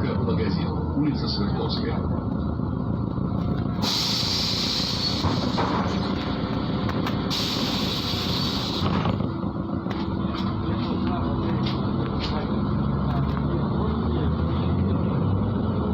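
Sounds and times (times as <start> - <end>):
bus engine droning: 0.0 - 15.9
compressed air hissing: 3.8 - 5.6, 7.2 - 8.9.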